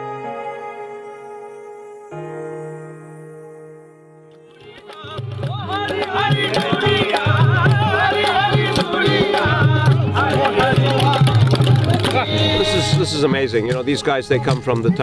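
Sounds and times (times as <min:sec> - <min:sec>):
ornamented folk melody: 0:00.0 - 0:15.0
hand drums beating: 0:04.6 - 0:15.0.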